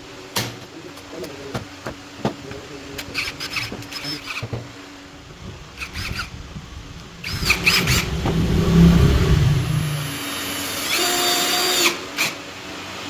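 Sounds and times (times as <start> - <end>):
cordless drill motor running: 3.1 - 4.5, 5.7 - 8.5, 9.9 - 12.4.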